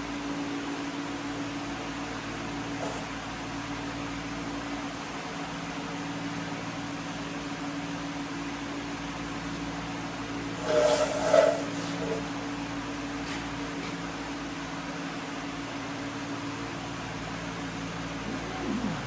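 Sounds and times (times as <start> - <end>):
machine hum: 16.8 - 19.0.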